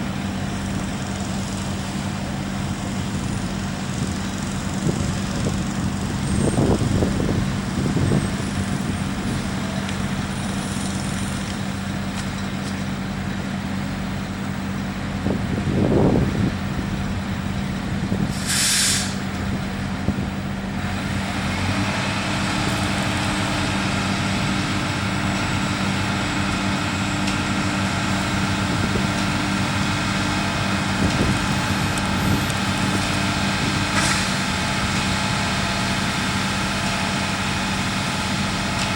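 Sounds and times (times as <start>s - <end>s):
diesel truck engines running: 0.0s - 38.9s
high engine hum: 0.0s - 38.9s
air brake hiss: 18.3s - 19.3s, 34.0s - 34.4s.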